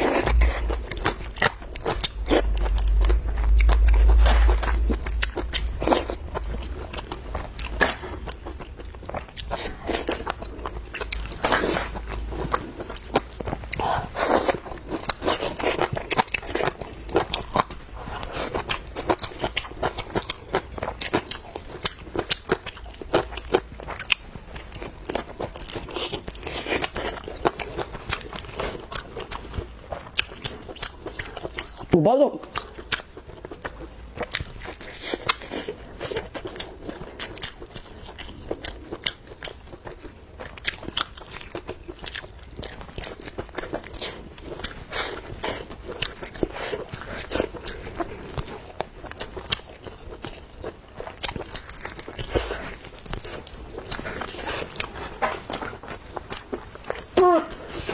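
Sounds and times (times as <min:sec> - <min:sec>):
deep low rumble: 0:00.0 - 0:13.8
crunchy chewing: 0:00.0 - 0:31.9, 0:32.5 - 0:57.9.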